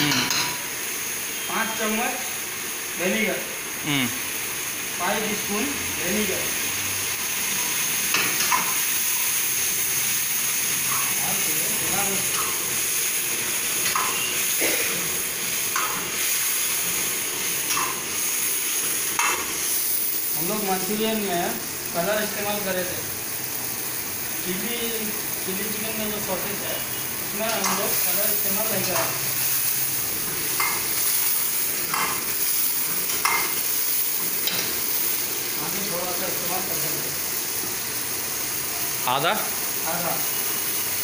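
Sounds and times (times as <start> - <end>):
sauce sizzling in a hot pan: 0.0 - 41.0.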